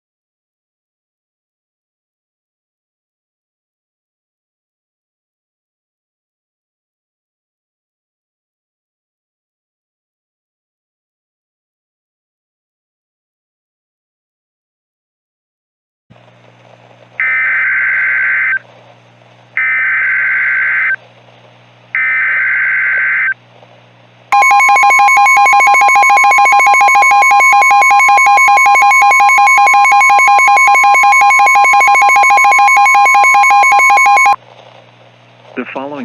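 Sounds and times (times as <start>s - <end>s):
screechy digital data bursts: 24.4s - 34.4s.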